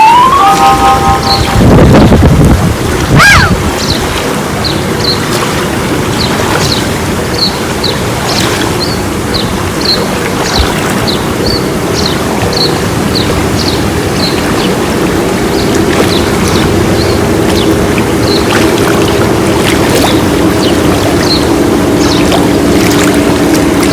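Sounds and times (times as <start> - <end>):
steady rushing noise: 0.0 - 23.9
small birds chirping: 20.1 - 22.4.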